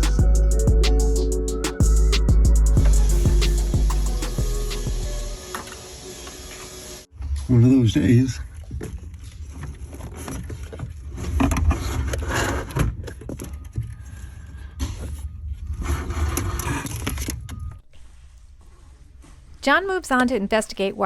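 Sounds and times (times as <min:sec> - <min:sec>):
scraping and rustling of plastic parts: 0:08.6 - 0:19.6.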